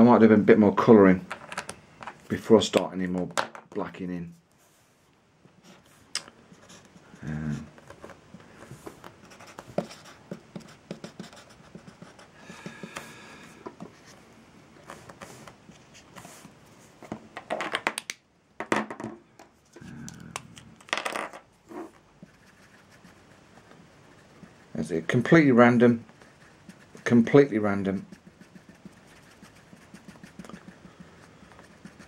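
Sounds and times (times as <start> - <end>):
marker scratching and squeaking: 26.1 - 32.0.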